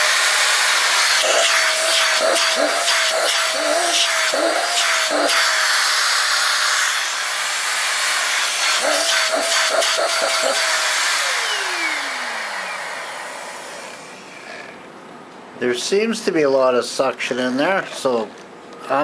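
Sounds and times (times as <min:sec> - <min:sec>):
vacuum cleaner running: 0:00.0 - 0:14.8
vacuum motor spinning down: 0:00.0 - 0:14.8.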